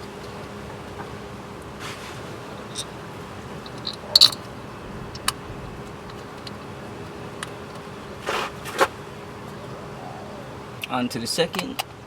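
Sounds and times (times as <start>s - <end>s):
scraping rustle: 1.8s - 3.0s, 8.1s - 9.0s.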